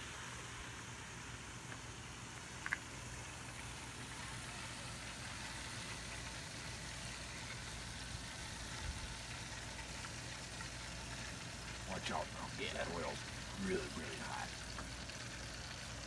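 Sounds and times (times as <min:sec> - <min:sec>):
hot oil sizzling: 0:00.0 - 0:16.0
low steady hum: 0:00.0 - 0:16.0.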